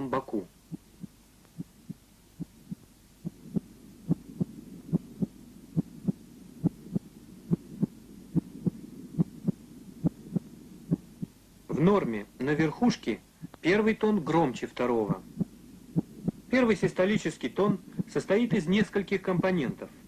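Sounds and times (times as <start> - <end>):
faint low hum: 0.0 - 20.0
heartbeat through stethoscope: 0.7 - 11.4, 15.3 - 16.5.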